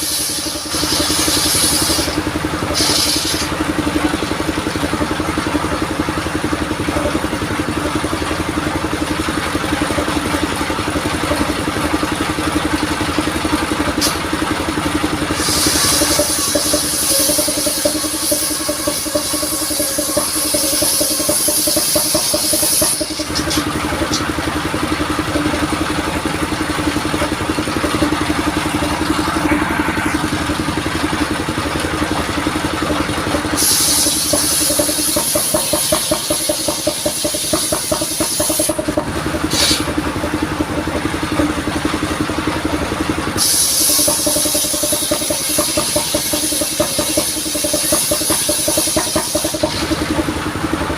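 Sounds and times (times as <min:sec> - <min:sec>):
high hissing sound: 0:00.0 - 0:03.5, 0:15.3 - 0:23.5, 0:33.6 - 0:38.6
sawmill engine running: 0:00.0 - 0:50.9.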